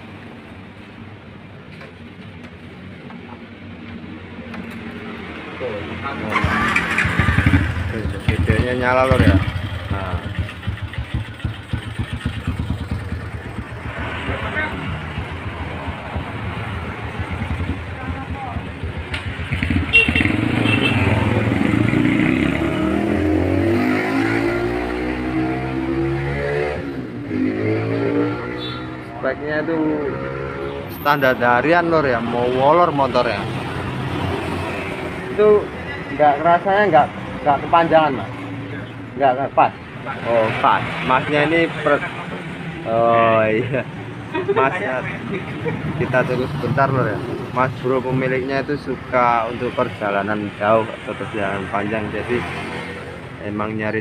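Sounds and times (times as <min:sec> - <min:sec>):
motorcycle engine at low revs: 0:06.4 - 0:26.0.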